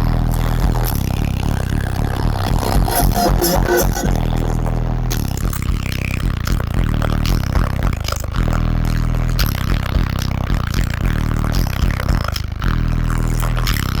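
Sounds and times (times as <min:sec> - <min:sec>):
bass-heavy music from car subwoofers: 0:00.0 - 0:14.0
rattling scraping noise: 0:02.4 - 0:04.5.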